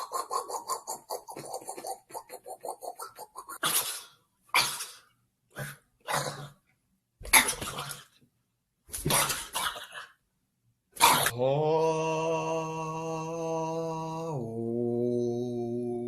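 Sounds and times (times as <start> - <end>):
man making rapid mouth pops: 0.0 - 5.0.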